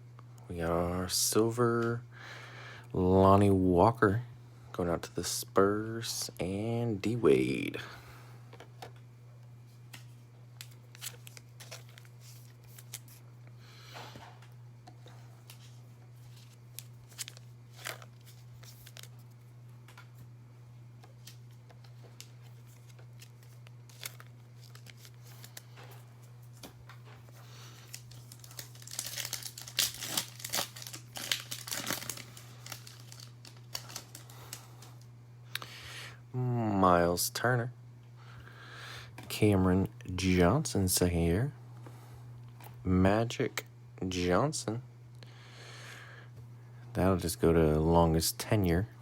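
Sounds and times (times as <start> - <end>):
low electrical hum: 0.0 - 49.0
foil pack crinkling and tearing: 9.9 - 13.2, 15.4 - 19.4, 21.1 - 35.0.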